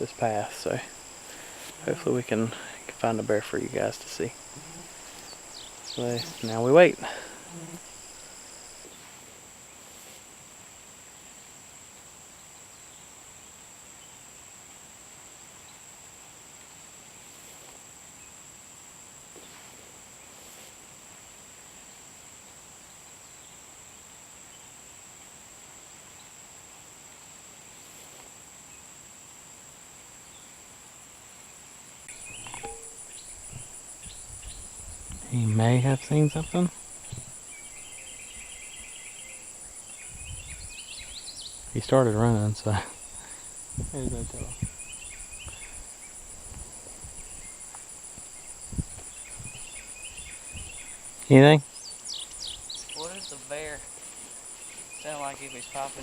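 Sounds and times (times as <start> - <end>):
insects trilling: 0.0 - 9.2, 30.2 - 56.0
faster-pulsing insect trill: 32.1 - 56.0.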